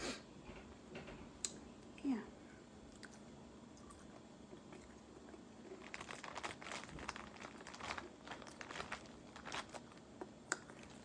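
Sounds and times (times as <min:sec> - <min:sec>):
dense crinkling and crackling: 0:05.6 - 0:11.0.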